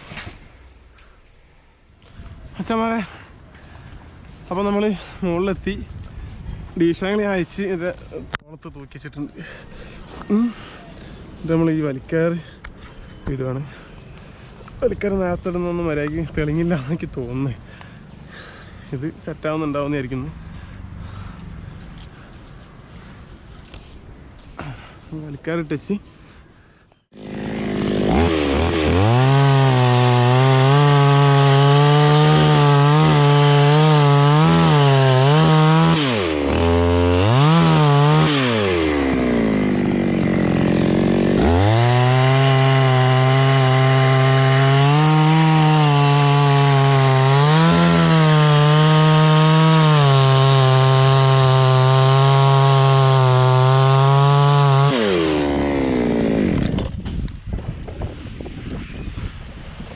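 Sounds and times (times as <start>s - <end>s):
chainsaw cutting wood: 27.1s - 57.0s.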